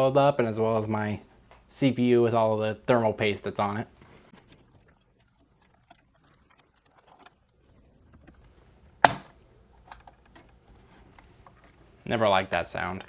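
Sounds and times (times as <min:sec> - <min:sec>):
sharp loud snap: 0:09.0 - 0:09.3.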